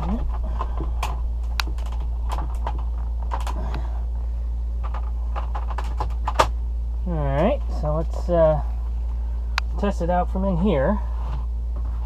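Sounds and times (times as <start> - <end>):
hoses and fittings clicking: 0.0 - 3.8, 4.8 - 6.6
steady low hum: 0.0 - 12.0.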